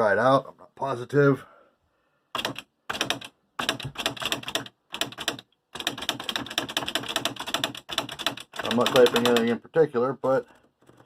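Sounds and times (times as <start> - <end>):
electric typewriter typing: 2.4 - 9.5.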